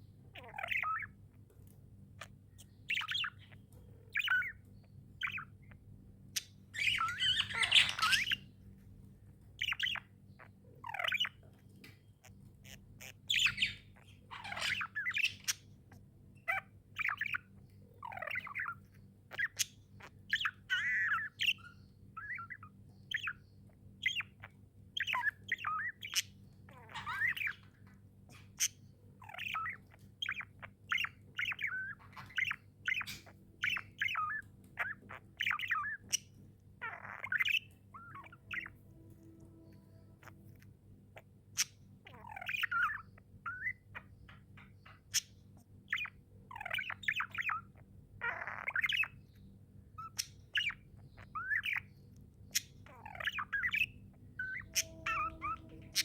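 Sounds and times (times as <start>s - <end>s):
budgerigars chirping: 0.3s - 1.3s, 2.2s - 8.7s, 9.4s - 56.0s
harsh squawk: 54.4s - 56.0s.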